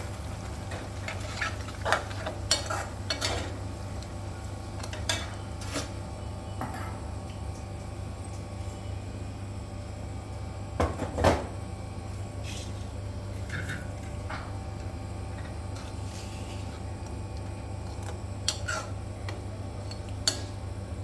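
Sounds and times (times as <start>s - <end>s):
utensil scraping a cooking pan: 1.0s - 3.6s, 15.8s - 16.9s, 18.5s - 19.0s.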